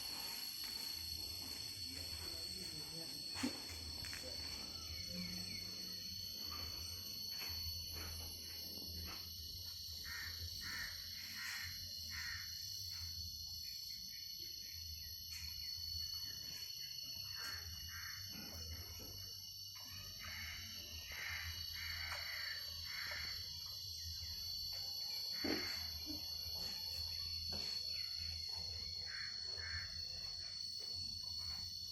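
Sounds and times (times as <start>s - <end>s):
high insect drone: 0.0s - 31.9s.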